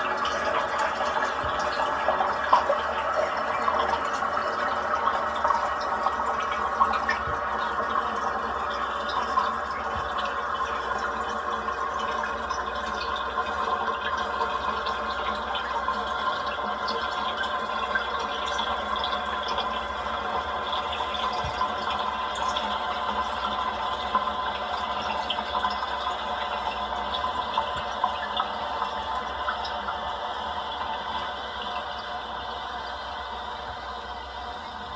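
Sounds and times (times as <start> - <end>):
toilet tank refilling: 0.0 - 34.9.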